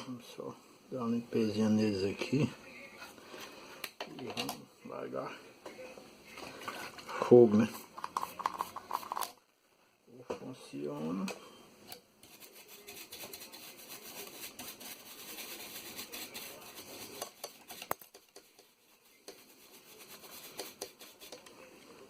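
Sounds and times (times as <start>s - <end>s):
scratchy rubbing: 12.2s - 21.5s.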